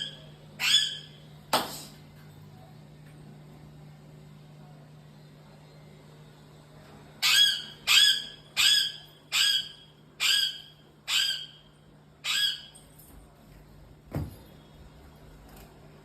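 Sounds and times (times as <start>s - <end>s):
animal high-pitched calls: 0.0s - 1.2s, 7.2s - 12.8s
faint steady hum: 0.0s - 16.0s.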